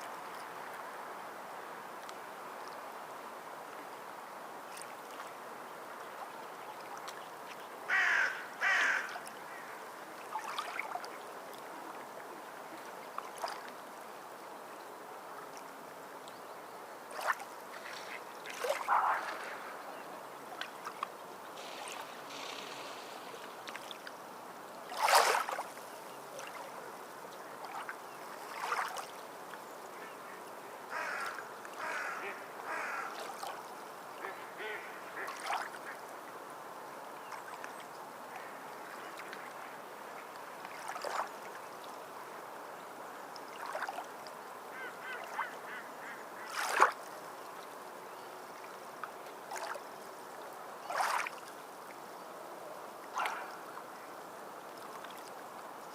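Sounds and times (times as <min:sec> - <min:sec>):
sea water washing: 0:10.2 - 0:12.0, 0:17.1 - 0:25.8.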